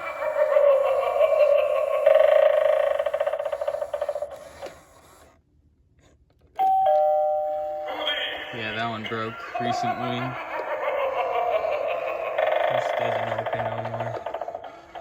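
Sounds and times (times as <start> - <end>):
electronic ding-dong chime: 6.6 - 8.0.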